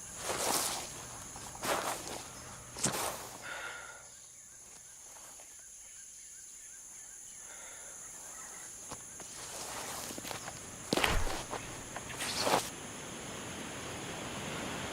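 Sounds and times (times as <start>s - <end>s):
footstep-like thud: 10.9s - 12.0s.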